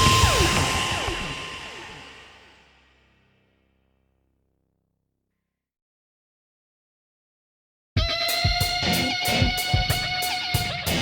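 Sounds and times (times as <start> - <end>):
falling pitch sweeps: 0.0 - 2.8.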